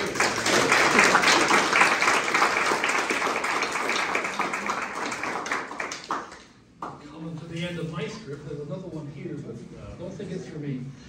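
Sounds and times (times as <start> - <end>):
audience applauding: 0.0 - 6.6.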